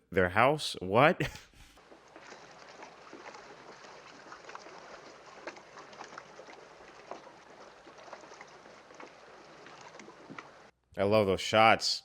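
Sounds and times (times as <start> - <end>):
small splashes: 1.8 - 10.7
water lapping around a boat: 1.8 - 10.7.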